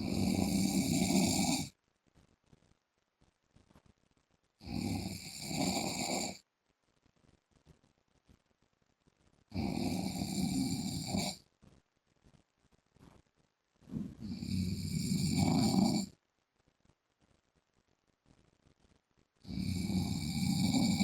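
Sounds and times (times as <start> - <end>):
man snoring loudly: 0.0 - 1.7, 4.6 - 6.4, 9.5 - 11.4, 14.2 - 16.1, 19.5 - 21.0.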